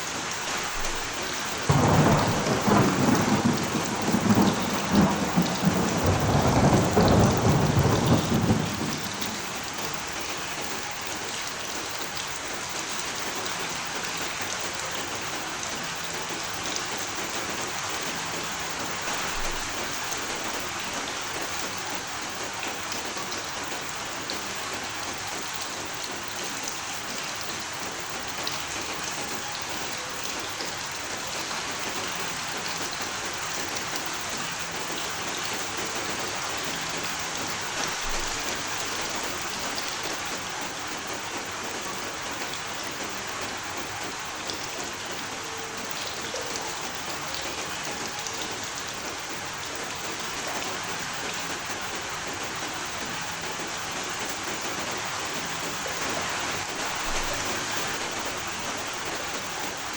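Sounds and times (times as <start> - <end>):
steady rain: 0.0 - 59.9
thunder rumbling: 1.0 - 10.7.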